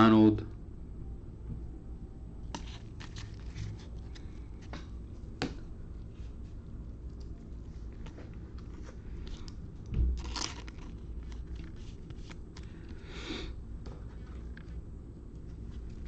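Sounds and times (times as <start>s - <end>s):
wrapper crinkling: 2.6s - 4.3s, 8.5s - 13.0s.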